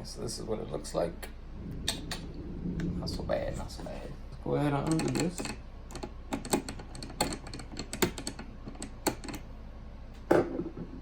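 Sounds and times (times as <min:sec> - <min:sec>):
screwdriver clicks and taps: 0:04.9 - 0:09.4.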